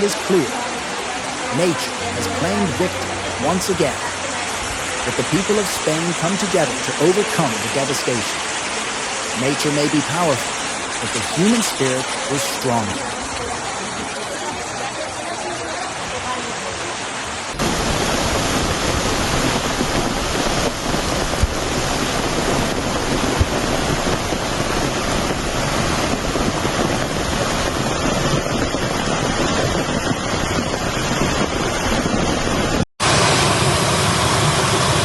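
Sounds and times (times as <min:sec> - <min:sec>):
rushing floodwater: 0:00.0 - 0:35.0.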